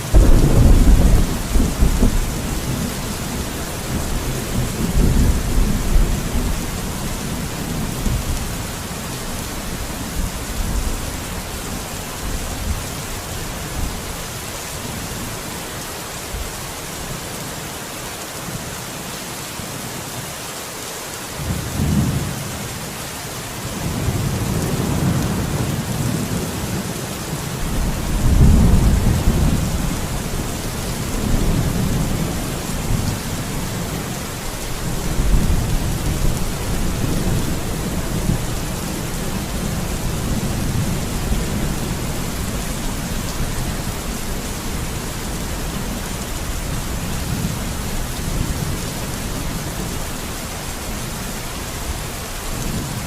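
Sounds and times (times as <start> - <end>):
heavy rain: 0.0 - 53.0
thunder rumbling: 0.1 - 8.7, 27.6 - 50.0.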